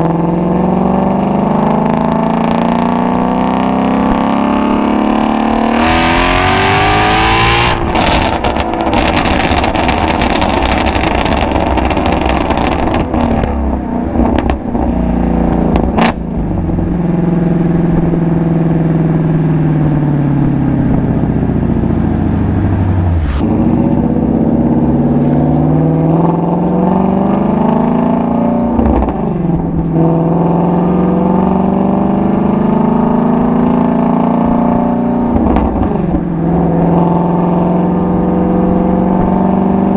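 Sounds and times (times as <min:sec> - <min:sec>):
car exhaust revving: 0:00.0 - 0:39.9
exhaust cracks: 0:07.3 - 0:17.0, 0:20.0 - 0:31.5.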